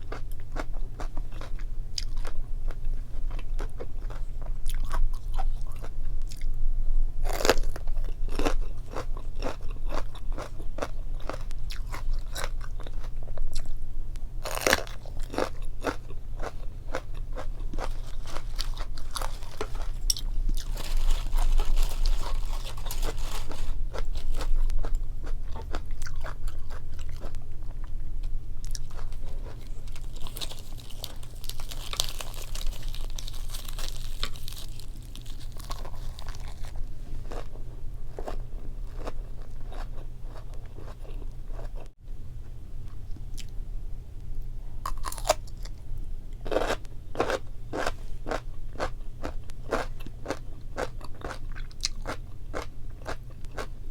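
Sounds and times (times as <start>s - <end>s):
chewing and crunching food: 0.0s - 6.6s, 7.2s - 13.8s, 14.4s - 42.0s, 44.8s - 53.9s
steady low hum: 0.0s - 53.9s.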